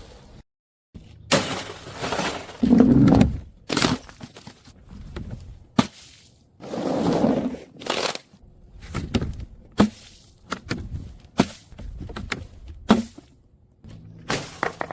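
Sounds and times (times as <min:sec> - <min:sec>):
brittle things crunching: 0:07.7 - 0:08.3.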